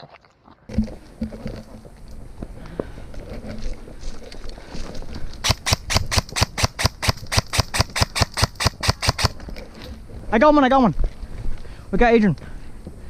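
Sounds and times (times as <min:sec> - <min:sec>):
airsoft gun rapid shots: 0:05.4 - 0:09.4.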